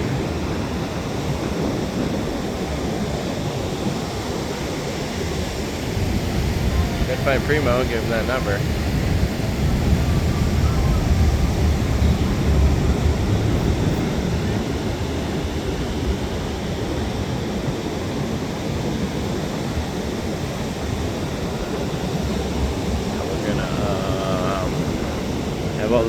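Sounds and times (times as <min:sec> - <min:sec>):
rushing outdoor noise: 0:00.0 - 0:26.0
deep low rumble: 0:06.4 - 0:16.5.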